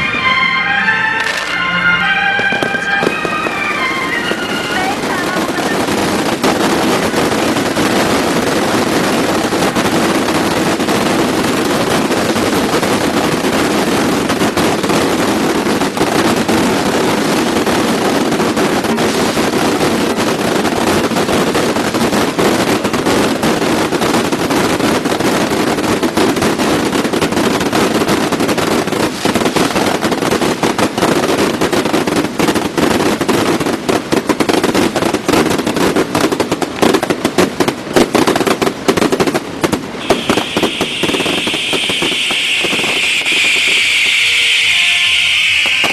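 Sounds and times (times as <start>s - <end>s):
bottle rockets hissing and cracking: 17.4s - 24.3s, 28.0s - 31.3s.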